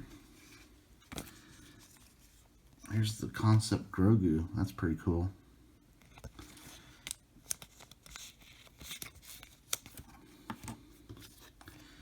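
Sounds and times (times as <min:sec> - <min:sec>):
cards sliding and rustling: 0:00.4 - 0:02.6, 0:06.2 - 0:12.0.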